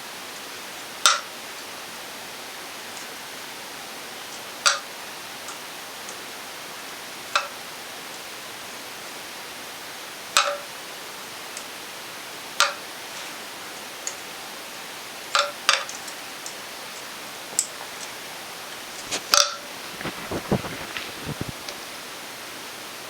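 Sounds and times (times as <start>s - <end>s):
steady hiss: 18.6s - 22.0s.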